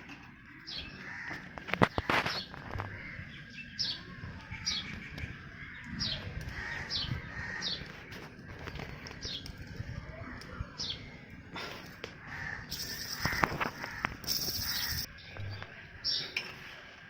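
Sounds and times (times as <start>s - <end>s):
bird chirping: 12.7s - 16.4s.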